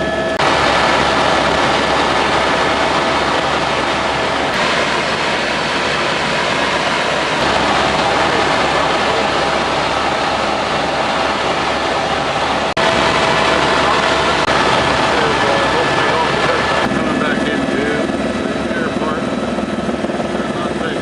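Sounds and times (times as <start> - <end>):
helicopter rotor and turbine rush: 0.0 - 21.0.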